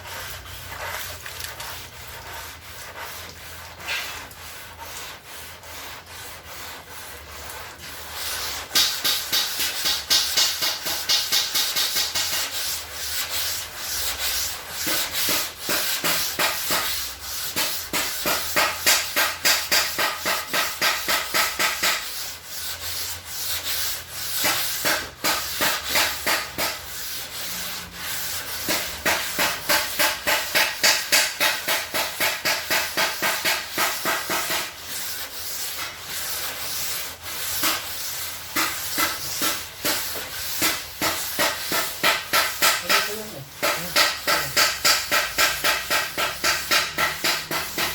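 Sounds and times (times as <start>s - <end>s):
sandpaper rubbing on metal: 0.0s - 47.9s.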